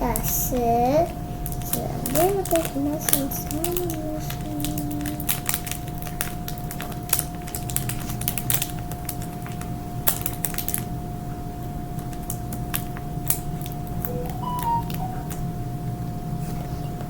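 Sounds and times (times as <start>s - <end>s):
slime stirred and squished: 1.3s - 10.8s.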